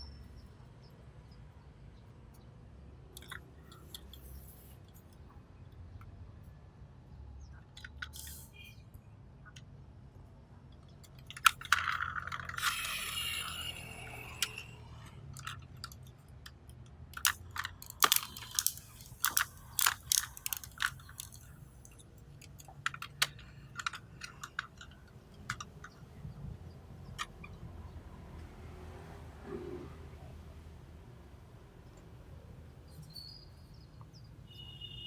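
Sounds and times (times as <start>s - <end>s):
plastic toy scraping rattle: 3.2s - 5.0s, 11.0s - 26.0s
plastic toy clicks and taps: 10.8s - 14.8s, 15.4s - 26.3s.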